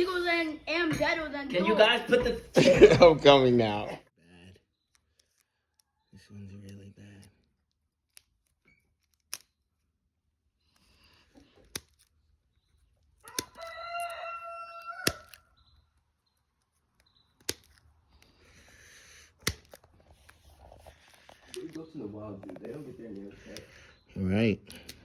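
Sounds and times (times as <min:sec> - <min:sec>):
sharp clicks: 0:16.9 - 0:18.6.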